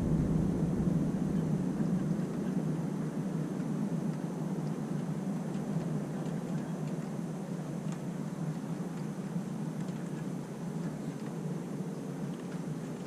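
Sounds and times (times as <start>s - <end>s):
thunder rumbling: 0.0s - 2.3s.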